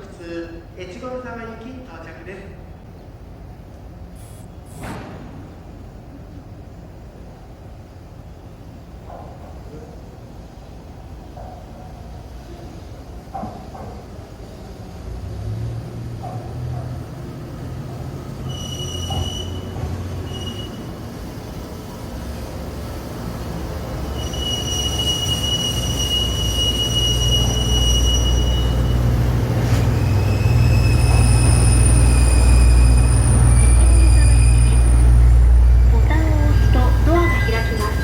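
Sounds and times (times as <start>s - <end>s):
diesel railcar rumbling on rails: 2.6s - 38.0s
steel wheel squeal: 18.4s - 20.8s, 24.1s - 29.2s, 29.8s - 35.3s, 36.0s - 38.0s.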